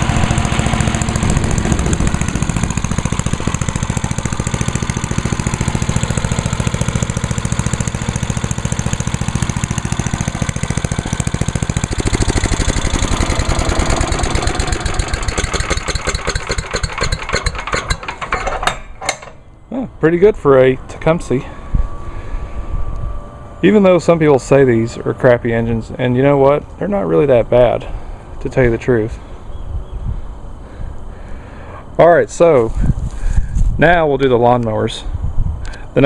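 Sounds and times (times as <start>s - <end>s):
chipper shredder engine running: 0.0s - 28.4s.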